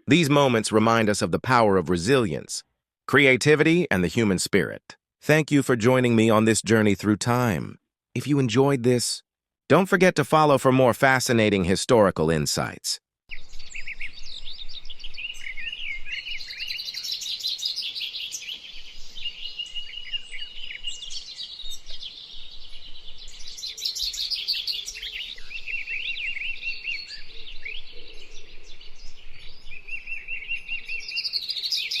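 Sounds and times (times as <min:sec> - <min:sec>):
small birds chirping and singing: 0:13.3 - 0:32.0.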